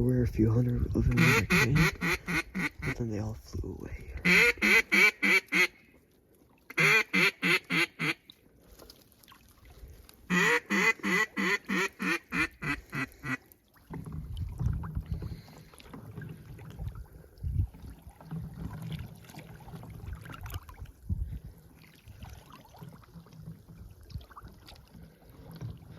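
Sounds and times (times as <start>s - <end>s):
wind rumble on microphone: 0.0s - 4.3s, 13.9s - 15.6s, 16.5s - 19.1s, 19.9s - 22.4s
duck quacking: 1.1s - 3.0s, 4.2s - 5.7s, 6.7s - 8.2s, 10.3s - 13.4s.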